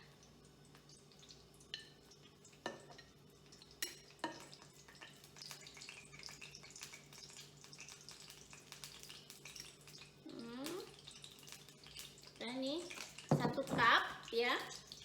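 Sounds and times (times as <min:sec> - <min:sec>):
small light ticks and rustles: 0:00.1 - 0:13.3
cup knocking against container: 0:13.3 - 0:13.9.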